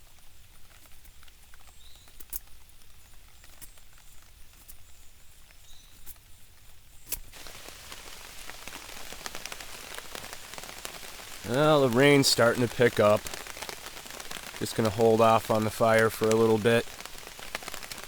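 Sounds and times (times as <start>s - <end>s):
rain falling: 7.3s - 18.0s.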